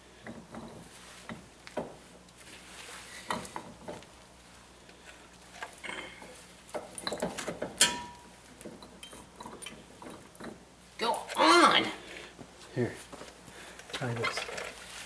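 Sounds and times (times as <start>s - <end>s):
metal tools clinking: 13.9s - 14.9s.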